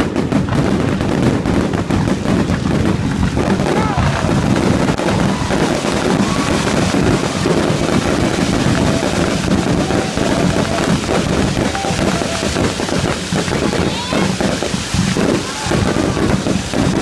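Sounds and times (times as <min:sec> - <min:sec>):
fireworks crackling: 0:00.0 - 0:17.0.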